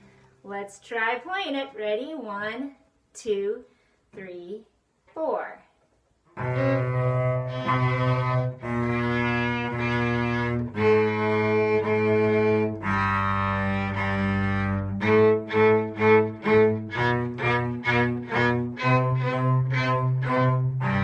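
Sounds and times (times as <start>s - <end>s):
cello playing: 6.3s - 21.0s
violin playing: 6.4s - 21.0s.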